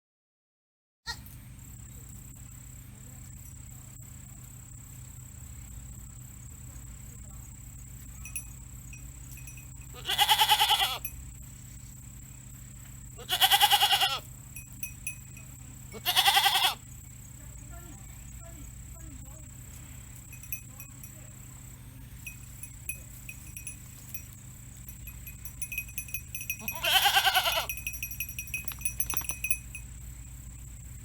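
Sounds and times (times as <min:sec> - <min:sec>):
goat bleating: 0:01.1 - 0:01.3, 0:09.9 - 0:11.1, 0:13.2 - 0:14.3, 0:15.9 - 0:16.9, 0:25.6 - 0:29.4.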